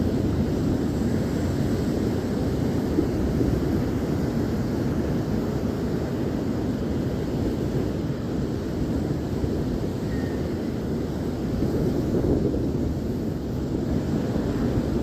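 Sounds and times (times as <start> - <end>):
ocean surf on shore: 0.0 - 15.0.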